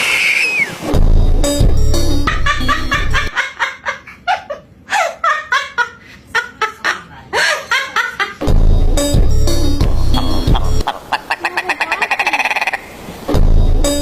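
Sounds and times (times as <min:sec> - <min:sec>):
bass-heavy music with drum beat: 0:01.0 - 0:03.3, 0:08.5 - 0:10.9, 0:13.3 - 0:14.0
laugh-like animal calls: 0:10.2 - 0:13.0.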